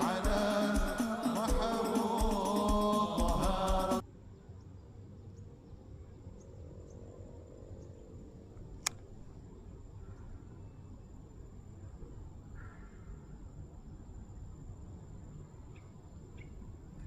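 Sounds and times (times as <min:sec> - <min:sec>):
background music: 0:00.0 - 0:04.0
crickets chirping: 0:00.0 - 0:04.0, 0:05.3 - 0:17.0
sharp click: 0:08.8 - 0:09.1.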